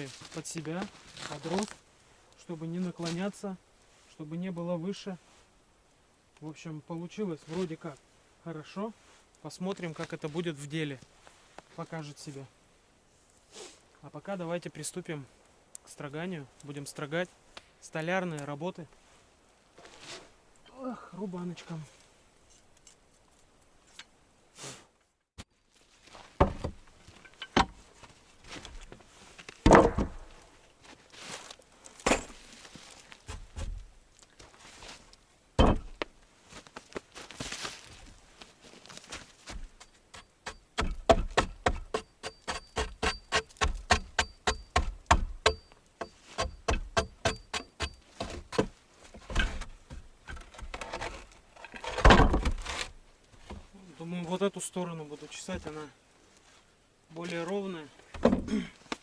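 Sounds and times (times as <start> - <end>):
sharp metallic knocks: 35.6 - 35.9, 40.2 - 48.0.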